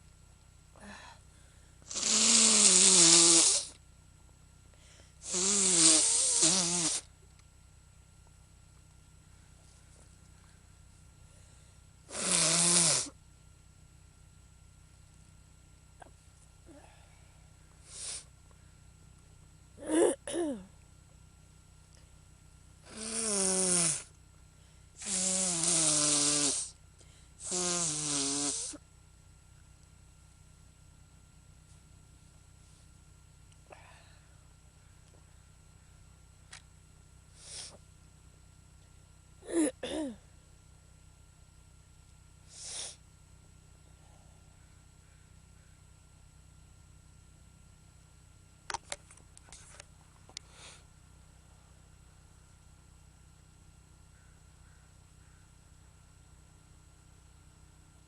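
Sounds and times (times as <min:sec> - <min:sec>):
person sneezing: 0:19.8 - 0:20.7, 0:39.4 - 0:40.2, 0:42.5 - 0:43.0
person groaning: 0:39.4 - 0:40.2.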